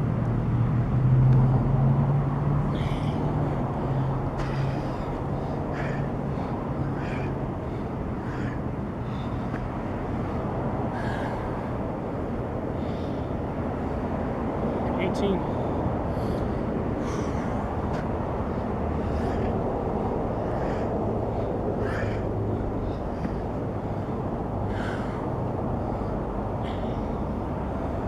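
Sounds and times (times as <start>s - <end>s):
engine hum: 0.0s - 28.0s.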